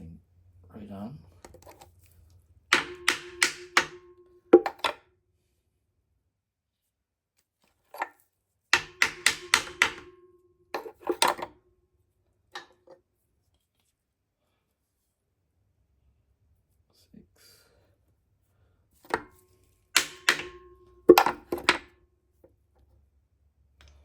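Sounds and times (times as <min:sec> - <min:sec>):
hammer tapping on metal: 0:02.7 - 0:05.0, 0:08.8 - 0:11.5, 0:20.0 - 0:21.9.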